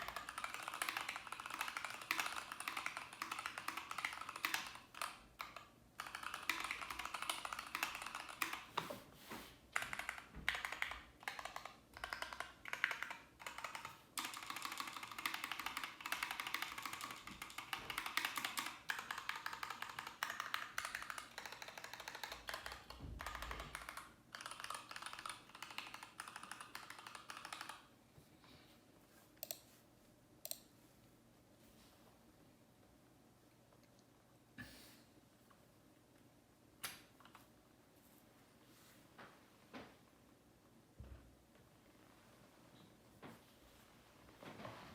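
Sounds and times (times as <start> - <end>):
mechanical keyboard typing: 0.0 - 8.8, 9.8 - 27.9.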